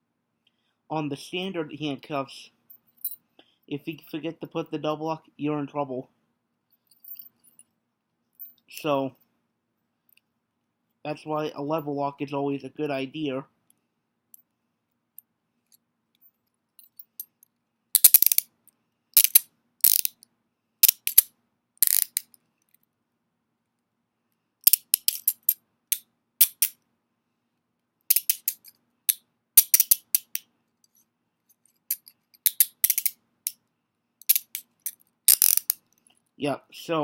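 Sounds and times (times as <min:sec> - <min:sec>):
handcuff ratchet clicking: 0:18.0 - 0:18.5, 0:19.2 - 0:20.2, 0:20.8 - 0:22.4, 0:24.6 - 0:26.8, 0:28.1 - 0:30.4, 0:31.9 - 0:33.2, 0:34.2 - 0:35.8.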